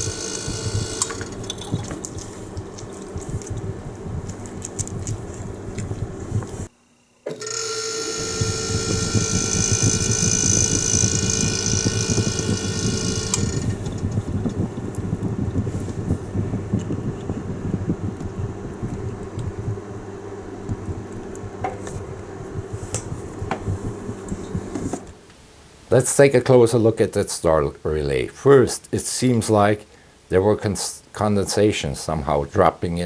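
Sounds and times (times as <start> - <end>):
high whining tone: 0.0 - 6.7, 7.3 - 25.1
machine humming: 0.0 - 25.2.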